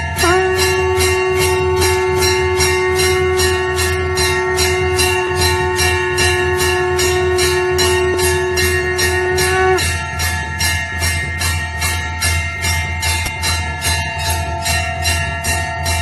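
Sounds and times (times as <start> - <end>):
conch shell blown: 0.0 - 10.4
hand bell rung rapidly: 0.0 - 16.0.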